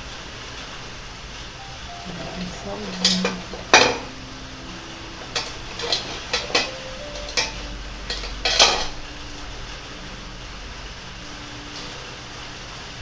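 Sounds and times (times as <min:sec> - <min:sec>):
low steady hum: 0:00.0 - 0:13.0
glass paint pots clinking: 0:02.1 - 0:04.2, 0:05.2 - 0:09.0.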